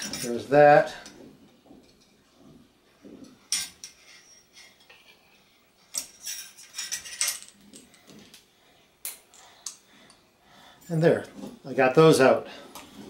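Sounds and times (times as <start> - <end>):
metal parts clinking: 0.0 - 0.5, 5.9 - 8.4.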